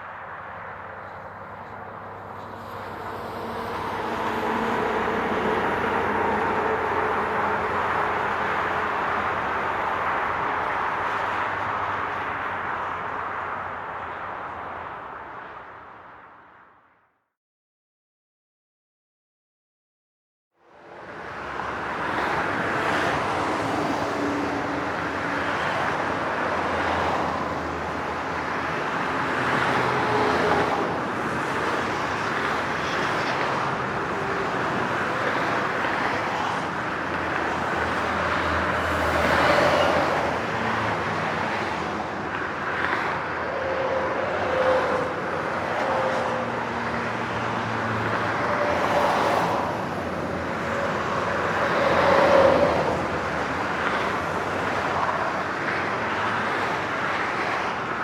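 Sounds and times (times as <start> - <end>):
highway traffic rush: 0.0 - 17.0, 20.6 - 58.0
vehicle passing: 1.0 - 9.2.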